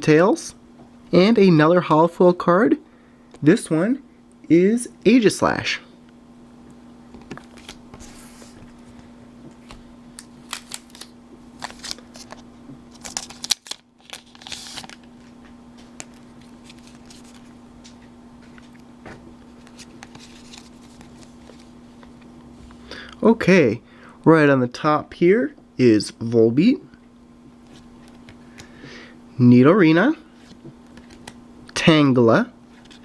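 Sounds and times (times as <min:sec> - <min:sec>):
steady low hum: 0:00.0 - 0:33.0
trading cards rustling: 0:07.1 - 0:18.8, 0:19.4 - 0:22.3, 0:30.3 - 0:31.4.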